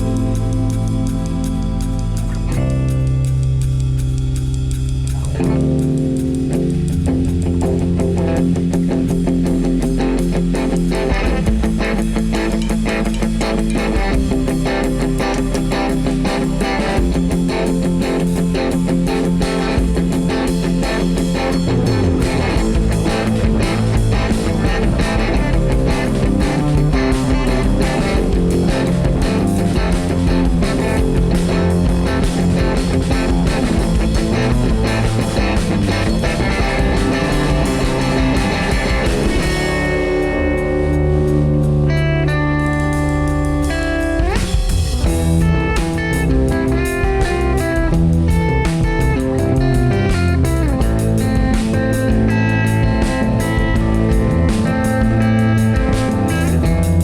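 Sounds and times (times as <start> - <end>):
guitar-led rock band music: 0.0 - 57.0.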